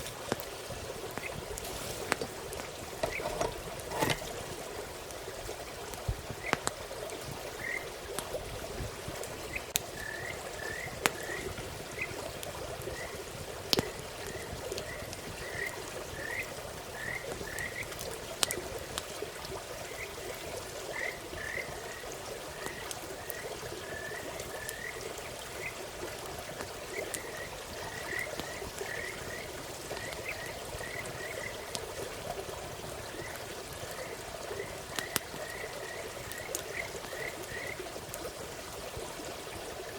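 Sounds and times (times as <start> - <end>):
campfire popping: 0.0 - 39.9
frogs chirping: 7.6 - 7.9, 9.5 - 12.2, 20.9 - 22.0, 26.9 - 31.7, 34.0 - 37.8.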